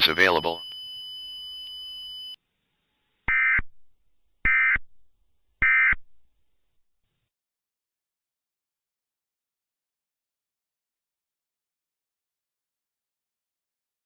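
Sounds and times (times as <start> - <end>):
faint steady high tone: 0.0 - 2.4.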